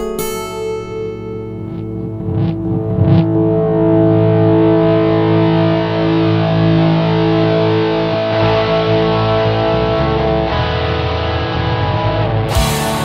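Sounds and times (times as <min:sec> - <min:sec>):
distorted electric guitar chords: 0:00.0 - 0:13.0.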